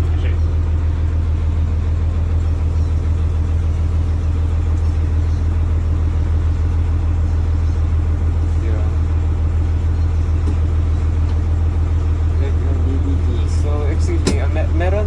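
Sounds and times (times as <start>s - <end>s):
fire truck engine idling: 0.0s - 15.0s.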